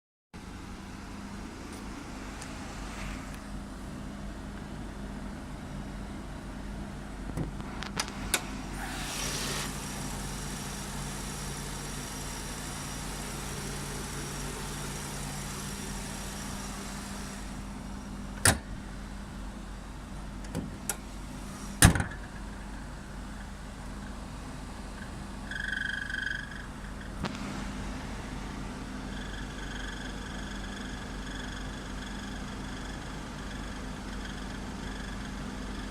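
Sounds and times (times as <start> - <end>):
car engine running: 7.6 - 35.9.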